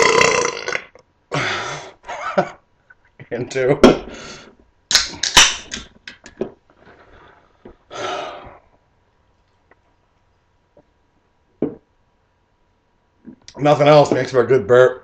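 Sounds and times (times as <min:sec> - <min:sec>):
man burping: 0:00.0 - 0:01.5.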